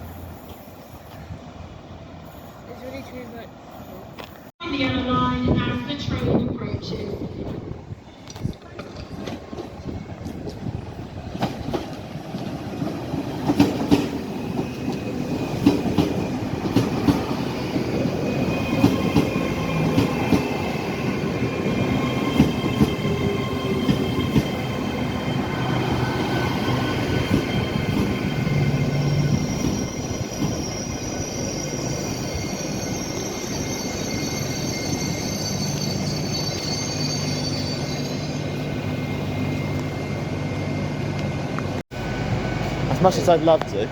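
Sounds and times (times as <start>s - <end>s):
train wheels clattering over rail joints: 8.3s - 17.4s
high brake and wheel squeal: 18.2s - 40.5s.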